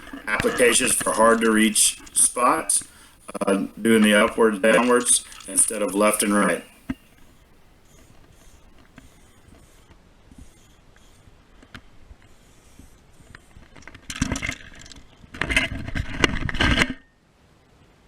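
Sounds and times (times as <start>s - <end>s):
scraping rubbing noise: 0.0s - 11.2s.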